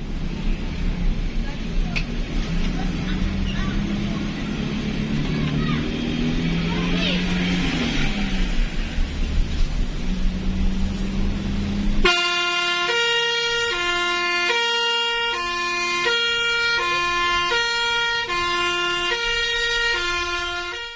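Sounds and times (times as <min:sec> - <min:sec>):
vehicle engine droning: 0:00.0 - 0:20.9
two-tone bus horn: 0:11.8 - 0:20.9.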